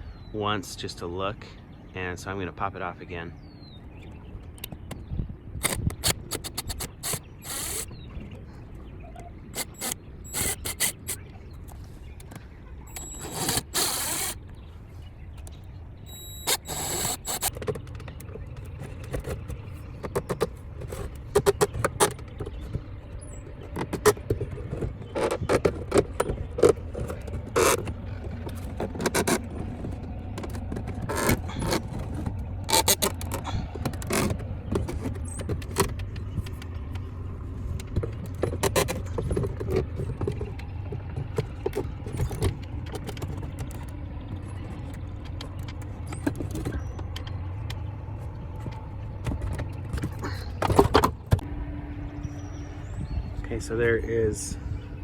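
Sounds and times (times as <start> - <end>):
low hum: 3.4 - 55.0
wooden trim being pried loose: 5.6 - 7.9, 9.6 - 11.2, 12.9 - 14.4, 30.4 - 36.0.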